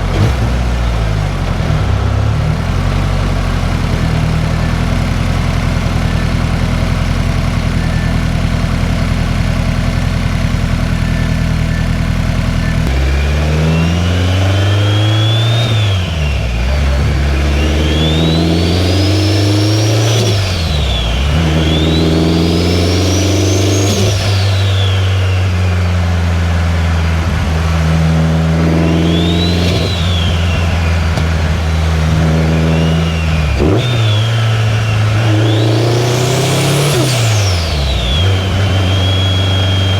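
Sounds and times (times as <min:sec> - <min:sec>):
car engine idling and accelerating: 0:00.0 - 0:39.9.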